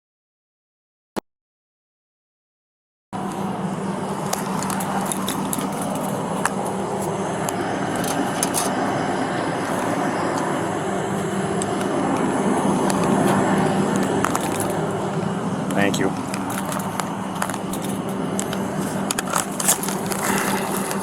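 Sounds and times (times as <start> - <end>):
vehicle engine hum: 3.2 - 21.0.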